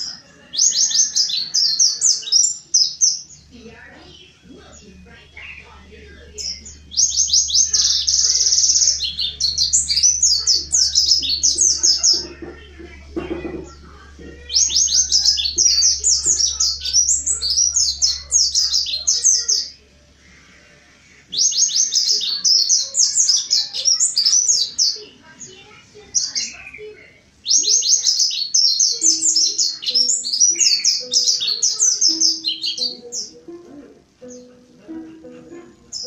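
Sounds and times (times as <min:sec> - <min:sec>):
bird twittering song: 0:00.0 - 0:19.8, 0:21.2 - 0:33.5.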